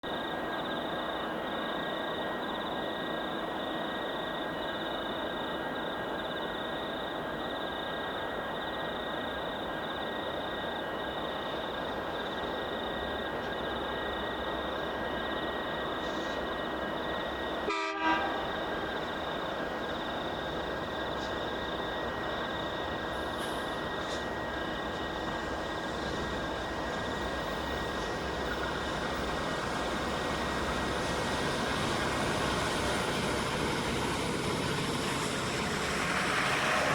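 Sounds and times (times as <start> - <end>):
night insects chirping: 0.0 - 36.9
deep train rumble: 0.1 - 36.9
diesel locomotives humming: 9.6 - 36.9.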